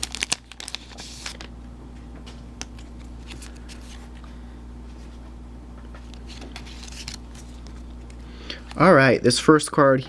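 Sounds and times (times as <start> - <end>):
trading cards rustling: 0.0 - 1.5, 2.2 - 5.3, 5.9 - 9.0
steady low hum: 0.0 - 10.0.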